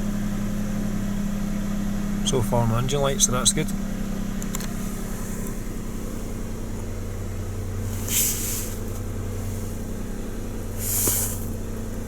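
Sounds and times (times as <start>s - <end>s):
car engine idling: 0.0s - 12.0s
short hiss: 7.9s - 9.8s, 10.8s - 11.6s.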